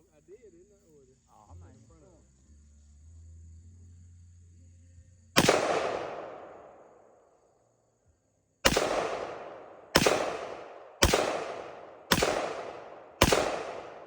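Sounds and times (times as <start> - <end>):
rifle shots with echo: 5.4 - 7.3, 8.6 - 14.0.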